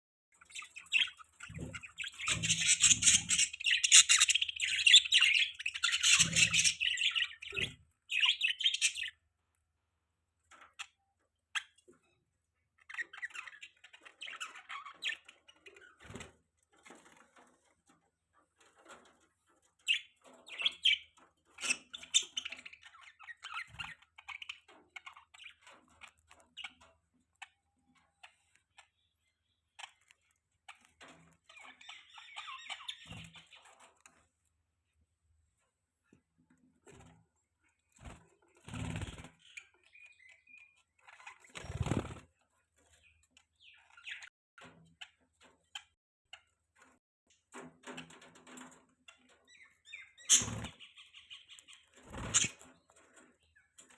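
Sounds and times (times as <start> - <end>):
budgerigars chirping and warbling: 0.4 - 9.2, 12.8 - 16.3, 19.8 - 34.0, 38.0 - 42.2, 42.9 - 44.3, 47.8 - 53.9.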